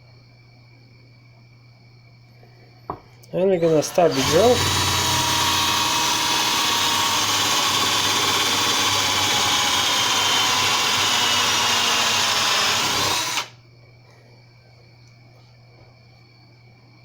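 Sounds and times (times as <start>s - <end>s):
electric drill running: 3.6s - 13.6s.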